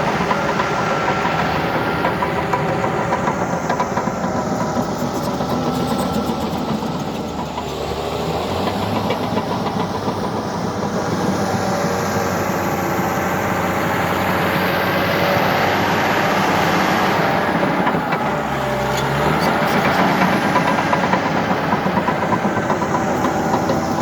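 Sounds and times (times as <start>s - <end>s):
rapid clatter: 0.0s - 7.8s, 16.3s - 24.0s
diesel machinery engine running: 0.0s - 24.0s.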